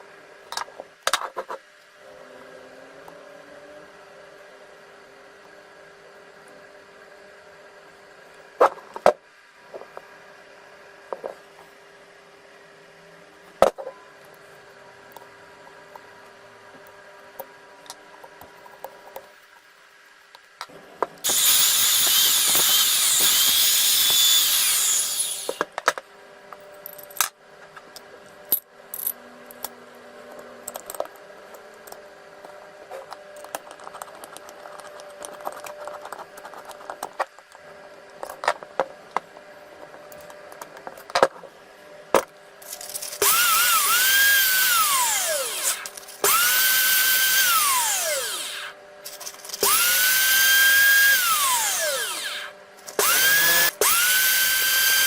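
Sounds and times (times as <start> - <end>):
electric drill motor whine: 21.2 - 25.7, 43.2 - 48.8, 49.6 - 55.0.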